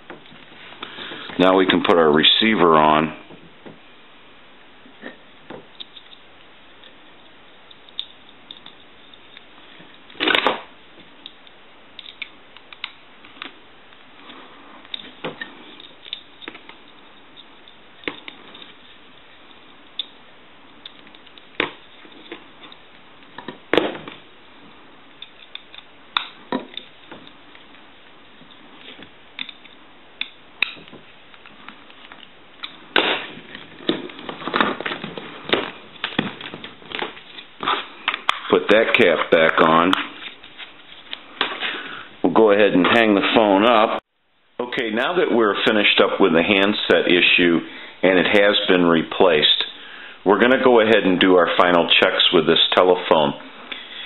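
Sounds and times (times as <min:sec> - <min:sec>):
small parts clicking and tapping: 0:07.6 - 0:10.2, 0:11.0 - 0:14.0, 0:25.1 - 0:32.8.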